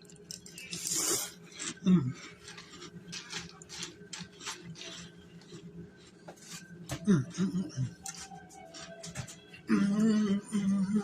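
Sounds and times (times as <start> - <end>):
crunching cereal: 0.0 - 7.0
person humming: 6.9 - 8.2, 9.6 - 11.0.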